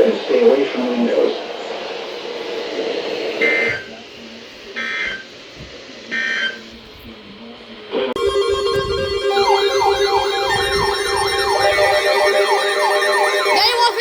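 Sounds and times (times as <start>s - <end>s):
loud steady tone: 8.2s - 14.0s
warbling digital data bursts: 8.2s - 14.0s.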